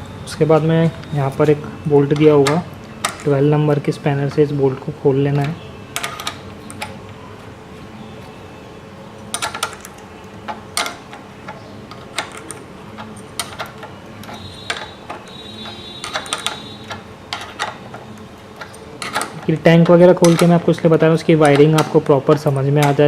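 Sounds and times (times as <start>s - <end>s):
spanner metallic clicks: 9.2s - 23.0s.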